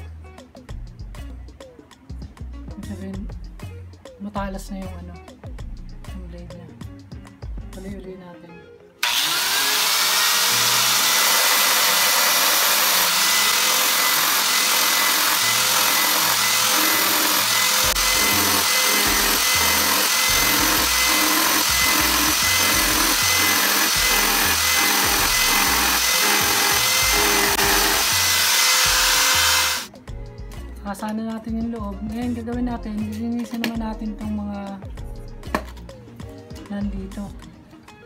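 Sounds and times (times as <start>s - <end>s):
background music with bass line: 0.0s - 8.8s, 15.7s - 38.0s
grinder whining: 9.0s - 29.9s.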